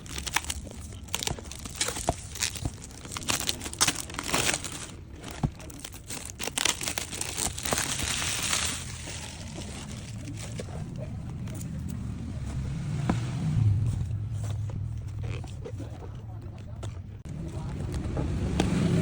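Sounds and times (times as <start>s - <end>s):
packaging crinkling and tearing: 0.0s - 10.8s.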